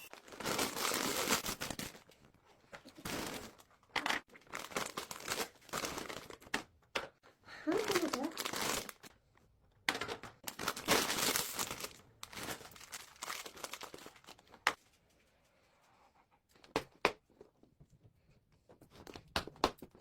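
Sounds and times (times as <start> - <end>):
plastic packaging crinkling: 0.1 - 2.1, 2.9 - 6.5, 7.8 - 9.1, 10.4 - 14.6.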